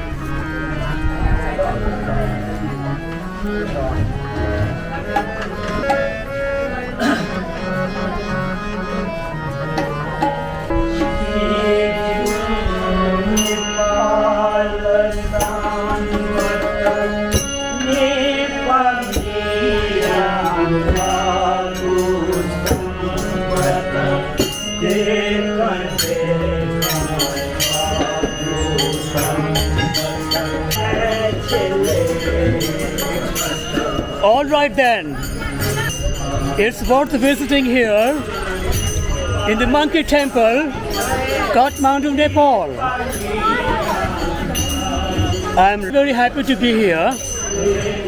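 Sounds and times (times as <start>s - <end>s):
devotional singing: 10.9s - 48.0s
tabla drumming: 24.4s - 34.2s.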